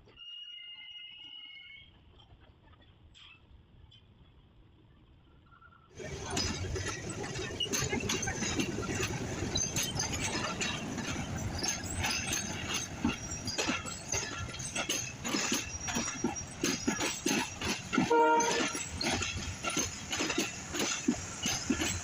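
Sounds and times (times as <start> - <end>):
low train rumble: 6.0 - 22.0
train clanking and rattling: 6.0 - 22.0.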